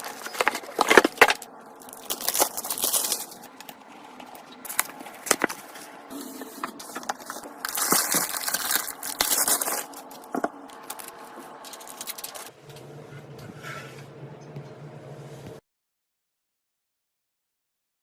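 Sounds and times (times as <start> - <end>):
packaging crinkling: 0.0 - 12.5
steady low hum: 0.0 - 15.6
computer parts clicking: 6.6 - 12.5.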